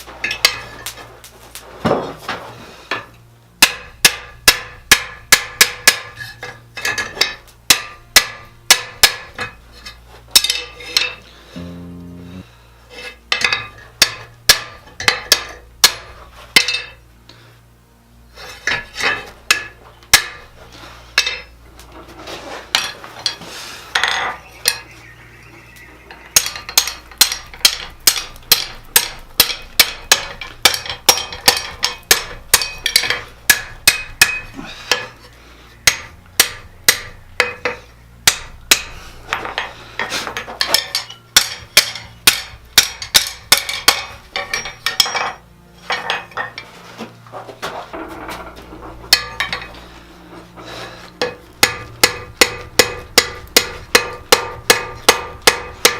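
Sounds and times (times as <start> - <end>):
hammer striking steel on anvil: 2.9 - 9.6, 13.3 - 17.0, 18.6 - 20.4, 26.4 - 35.1, 35.8 - 39.7, 40.4 - 46.6, 49.1 - 49.7, 51.2 - 55.9.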